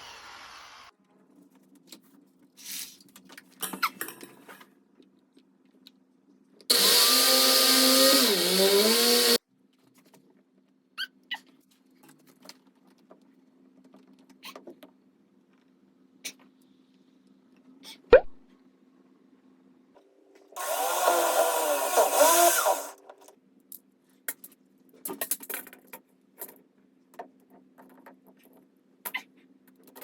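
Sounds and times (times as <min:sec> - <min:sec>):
small electric motor running: 0:06.7 - 0:09.4, 0:20.6 - 0:23.0.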